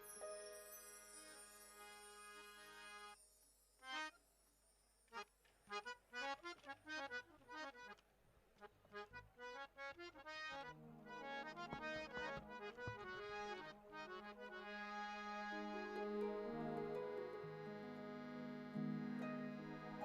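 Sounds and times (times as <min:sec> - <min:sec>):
harmonium playing: 0:01.1 - 0:03.2, 0:05.7 - 0:08.0, 0:08.9 - 0:20.0.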